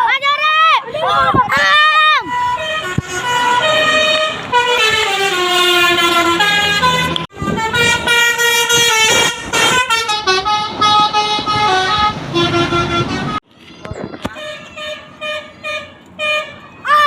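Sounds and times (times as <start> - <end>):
bus horn playing stepped notes: 2.2 - 13.4, 14.3 - 16.6.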